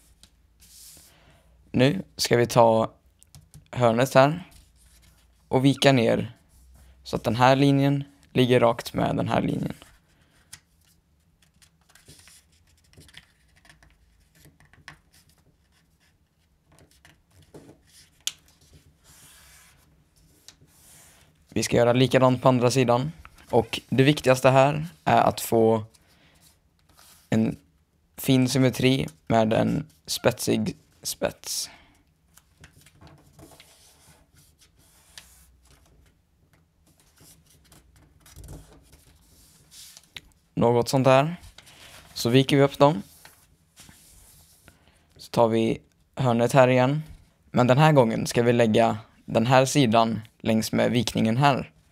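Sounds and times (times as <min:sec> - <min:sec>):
paper crease rubbing: 0:00.0 - 0:01.1, 0:16.8 - 0:21.4, 0:25.9 - 0:27.3, 0:32.8 - 0:36.0, 0:36.8 - 0:40.1, 0:42.9 - 0:44.6
paper rustling: 0:09.7 - 0:21.3, 0:32.3 - 0:40.3.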